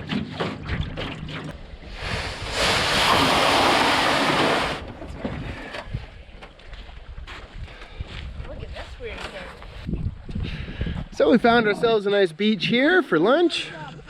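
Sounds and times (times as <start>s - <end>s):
water noise: 0.0s - 6.2s
wind: 0.0s - 14.0s.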